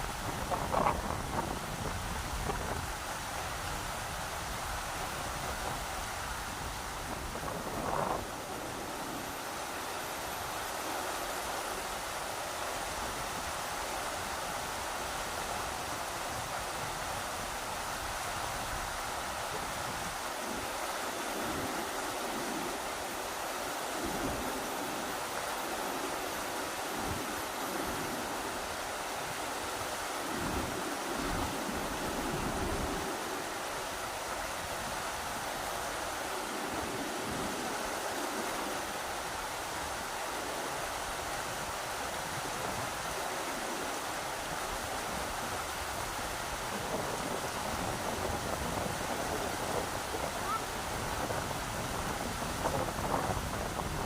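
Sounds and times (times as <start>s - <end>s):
wind buffeting microphone: 0.0s - 10.8s, 24.0s - 43.8s, 44.4s - 54.0s
river water rushing: 0.0s - 54.0s.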